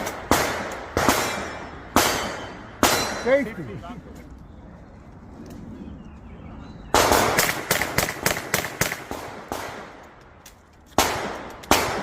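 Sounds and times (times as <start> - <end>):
gunshots with echo: 0.0 - 3.3, 6.9 - 10.0, 11.0 - 12.0.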